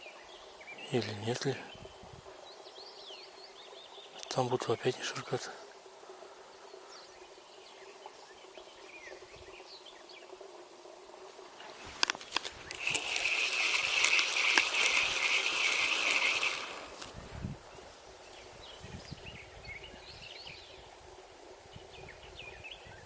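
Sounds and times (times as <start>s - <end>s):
fishing reel whirring: 11.7s - 17.2s
sharp clicks: 12.0s - 17.2s.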